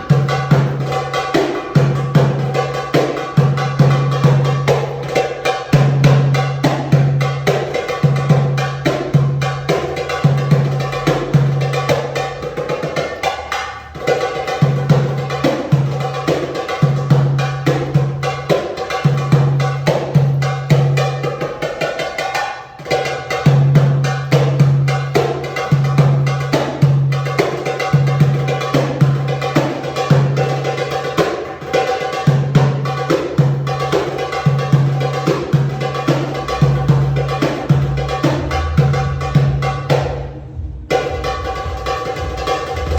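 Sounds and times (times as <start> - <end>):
tabla drumming: 0.0 - 42.9
bass drum strokes: 36.4 - 42.9.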